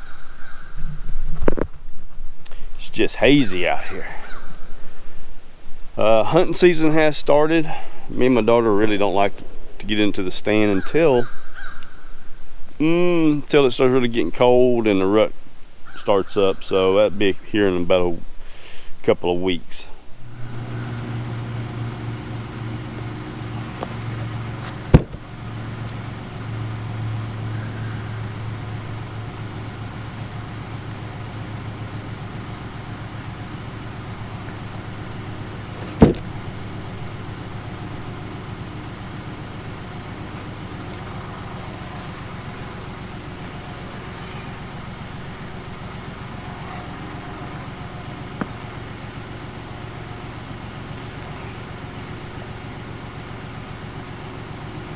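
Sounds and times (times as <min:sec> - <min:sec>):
engine idling: 0:00.0 - 0:54.9
sharp loud knocks: 0:24.6 - 0:25.3, 0:35.8 - 0:36.3.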